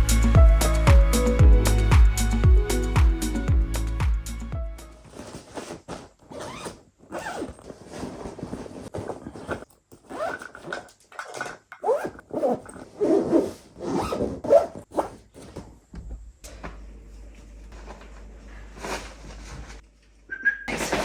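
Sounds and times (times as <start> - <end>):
rasping scrapes and rustles: 5.0 - 15.8, 17.6 - 20.0, 20.7 - 21.0.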